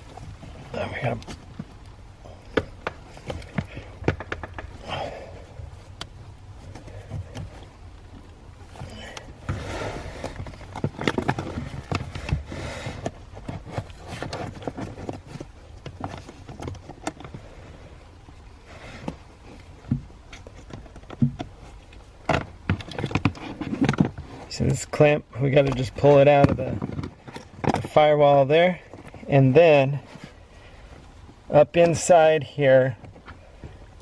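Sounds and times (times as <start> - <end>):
hands clicking and scraping plastic: 0.4 - 17.6, 18.9 - 29.3.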